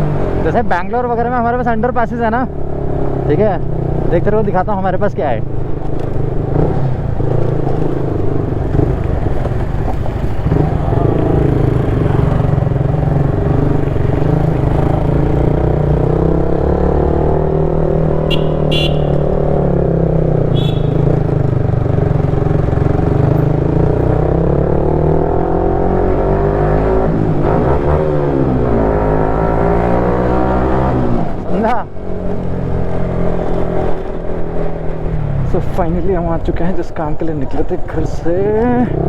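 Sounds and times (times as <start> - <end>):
motorcycle engine running: 5.4 - 16.7, 18.2 - 25.1.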